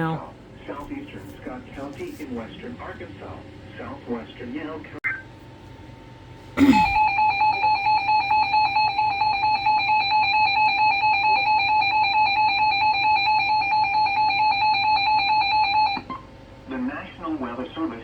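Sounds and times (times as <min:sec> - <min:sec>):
loud electronic alarm tone: 0:06.7 - 0:16.0.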